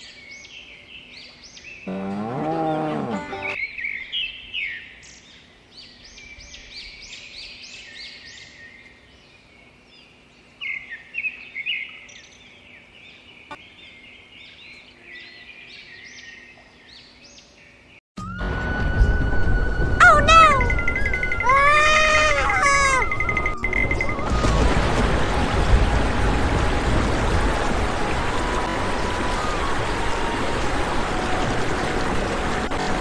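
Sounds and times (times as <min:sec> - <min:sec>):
birds chirping: 0:01.7 - 0:03.6, 0:20.0 - 0:24.8.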